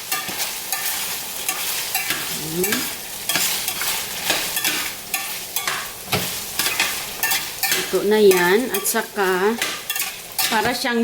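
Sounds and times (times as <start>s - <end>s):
chicken sizzling in a pan: 0.0s - 11.0s
utensil scraping in pan: 0.0s - 11.0s.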